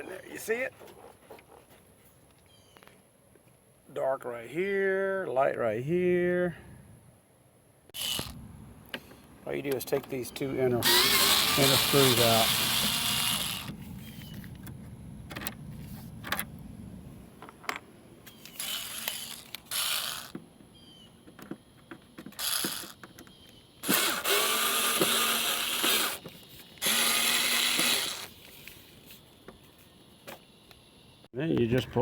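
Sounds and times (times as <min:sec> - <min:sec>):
power tool whirring and clicking: 0:08.0 - 0:08.4, 0:10.8 - 0:13.8, 0:18.3 - 0:20.4, 0:22.3 - 0:28.8.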